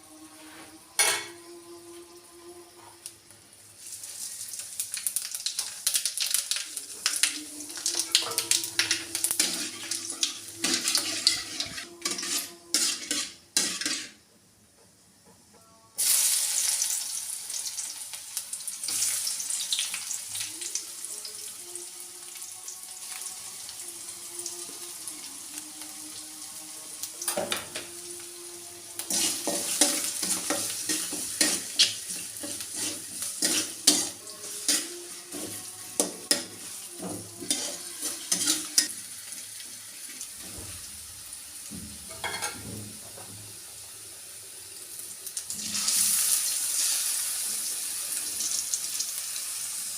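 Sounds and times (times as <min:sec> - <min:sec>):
food sizzling in hot oil: 0:03.0 - 0:14.2, 0:16.0 - 0:49.9
spatula scraping against pan: 0:08.2 - 0:14.2, 0:29.0 - 0:36.8, 0:37.4 - 0:38.9.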